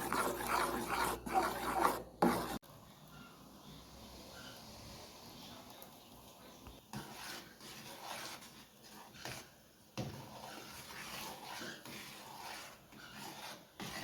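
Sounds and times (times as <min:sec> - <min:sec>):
spoon scraping a pot: 0:00.0 - 0:02.6, 0:06.9 - 0:14.0.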